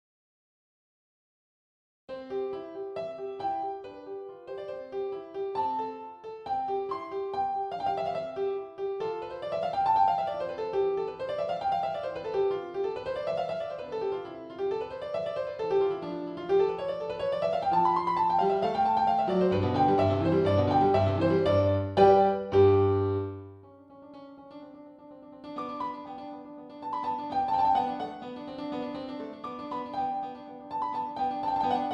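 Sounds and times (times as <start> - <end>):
keyboard music with quick notes: 18.2 - 23.5.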